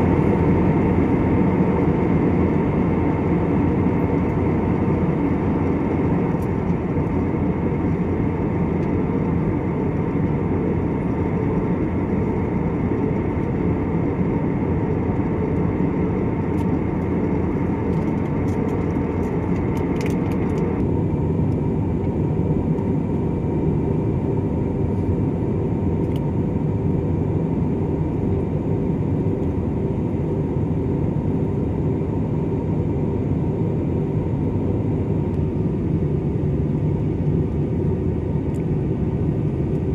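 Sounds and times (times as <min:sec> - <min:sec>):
jet engines rumbling: 0:00.0 - 0:39.9.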